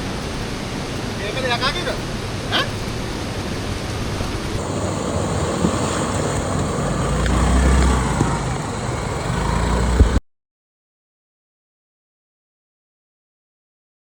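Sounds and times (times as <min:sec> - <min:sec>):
motorcycle low rumble: 0:02.0 - 0:10.2
wind rushing over microphone: 0:02.0 - 0:10.2.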